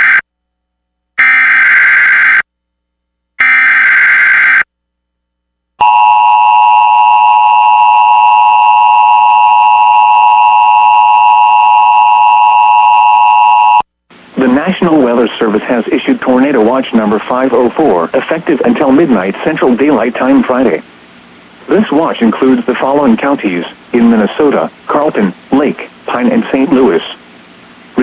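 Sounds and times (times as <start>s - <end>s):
loud steady alarm tone: 0.0s - 0.2s, 1.2s - 2.5s, 3.4s - 4.7s, 5.8s - 13.8s.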